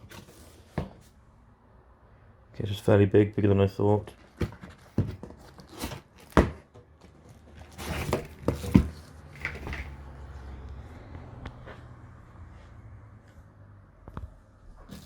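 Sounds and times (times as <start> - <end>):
cardboard rustling: 0.0 - 1.1, 4.1 - 10.0
sharp knocks and thuds: 8.0 - 9.9.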